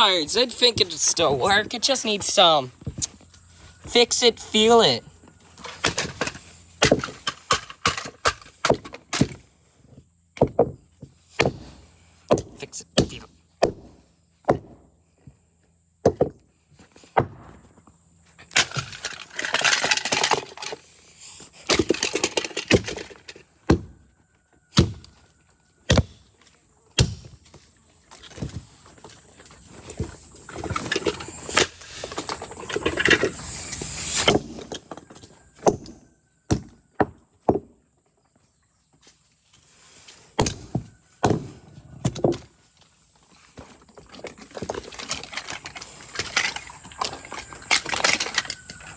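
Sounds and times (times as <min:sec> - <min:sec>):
plastic parts rattling and scraping: 0:00.0 - 0:09.4, 0:18.4 - 0:23.6, 0:28.2 - 0:35.6, 0:42.0 - 0:48.9
plastic parts knocking and clicking: 0:21.7 - 0:23.8.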